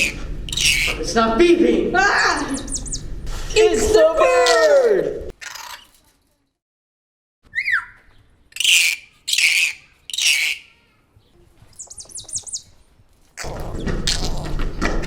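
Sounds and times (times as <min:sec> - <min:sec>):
bird chirping: 0:00.0 - 0:01.1, 0:02.3 - 0:03.8, 0:07.5 - 0:14.9
harsh bird squawks: 0:00.0 - 0:01.1, 0:02.2 - 0:03.2, 0:07.5 - 0:11.0.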